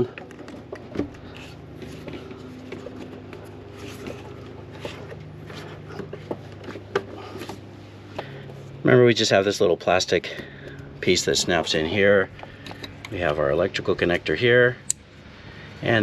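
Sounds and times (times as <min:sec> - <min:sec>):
rubber hose rubbing and scraping: 0:00.0 - 0:07.9
steady low hum: 0:00.0 - 0:16.0.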